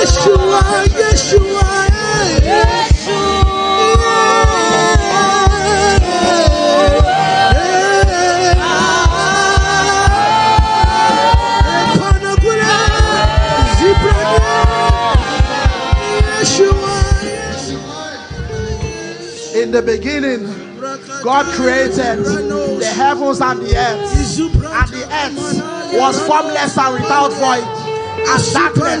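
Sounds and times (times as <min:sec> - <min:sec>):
bass drum beat: 0:00.0 - 0:17.5, 0:23.7 - 0:25.0
gospel music with singing: 0:00.0 - 0:29.0.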